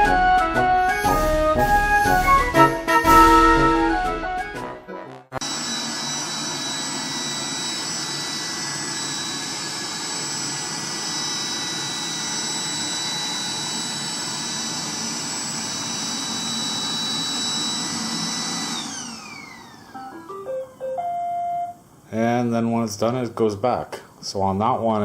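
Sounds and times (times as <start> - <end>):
robot vacuum running: 5.4 - 21.0.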